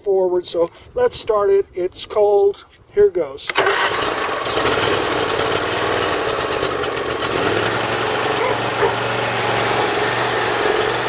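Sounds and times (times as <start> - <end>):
engine running steadily: 3.5 - 11.0.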